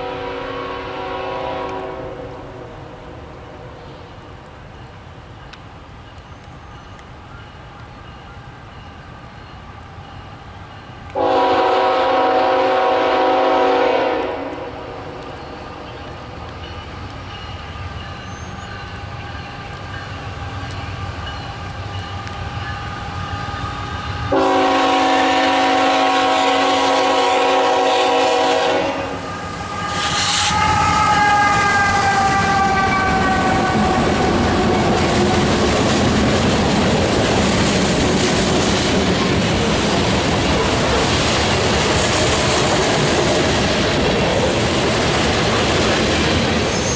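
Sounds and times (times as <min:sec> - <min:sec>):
locomotive air horn blasts: 0:00.0 - 0:02.5, 0:11.2 - 0:15.0, 0:24.3 - 0:29.2, 0:46.5 - 0:46.9
train wheels clattering on rails: 0:29.9 - 0:46.9.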